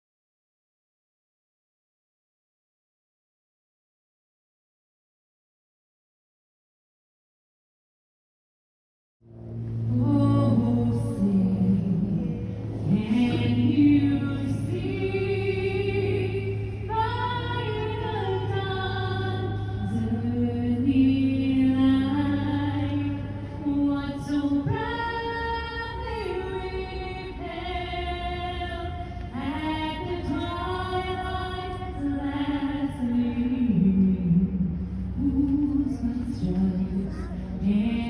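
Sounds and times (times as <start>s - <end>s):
group of voices singing: 12.3s - 33.4s.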